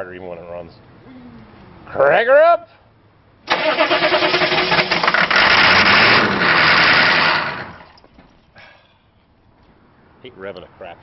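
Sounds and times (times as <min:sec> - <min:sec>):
diesel engine cranking and starting: 0:03.5 - 0:08.0.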